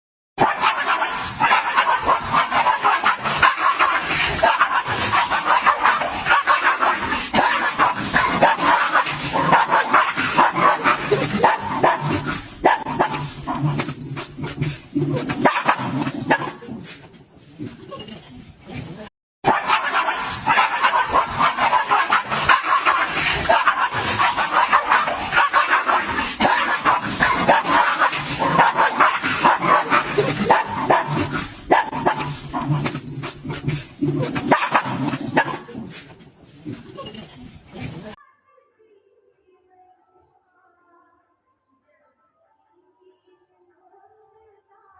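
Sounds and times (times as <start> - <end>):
dog barking and yipping: 0.4 - 13.9, 15.3 - 16.6, 19.4 - 32.9, 34.2 - 35.8.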